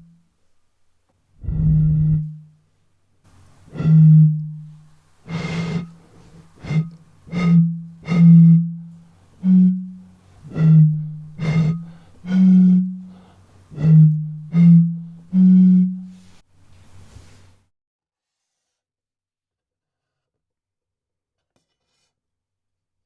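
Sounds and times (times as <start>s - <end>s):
ringing notes on water bottles: 10.4s - 16.2s.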